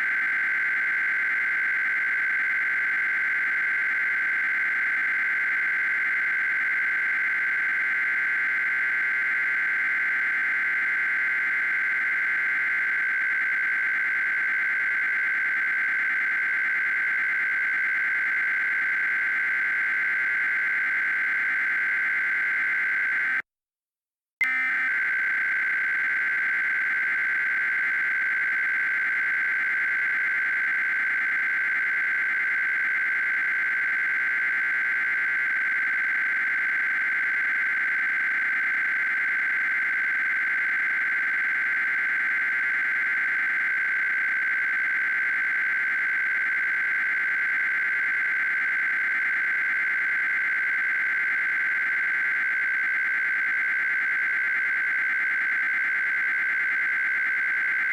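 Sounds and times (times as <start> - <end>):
high-pitched electronic data tone: 24.4 - 57.9.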